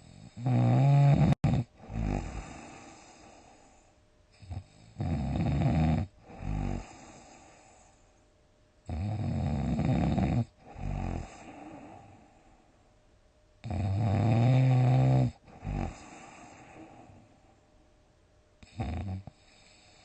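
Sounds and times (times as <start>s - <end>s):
person snoring loudly: 0.0s - 3.4s, 4.4s - 7.4s, 8.9s - 12.1s, 13.6s - 17.0s, 18.6s - 20.0s
quiet breathing: 0.0s - 13.0s, 13.6s - 17.8s, 18.6s - 20.0s.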